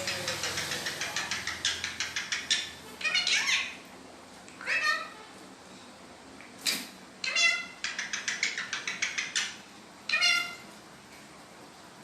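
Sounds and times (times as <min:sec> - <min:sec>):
parrot chattering notes: 0:00.0 - 0:03.8, 0:04.6 - 0:05.2, 0:07.2 - 0:10.7
parrot meow-like calls: 0:03.0 - 0:03.8, 0:04.6 - 0:05.3, 0:07.2 - 0:10.7.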